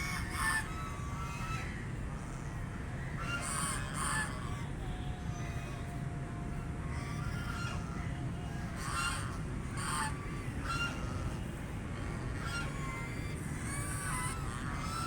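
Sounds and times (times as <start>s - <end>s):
ducks quacking: 8.7s - 11.4s, 12.0s - 15.0s.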